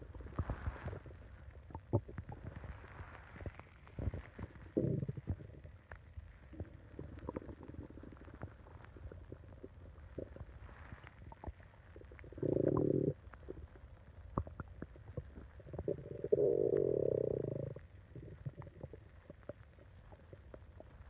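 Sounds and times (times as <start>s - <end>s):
faint gurgles and clicks: 0.0s - 21.0s
stomach growling: 0.0s - 21.0s.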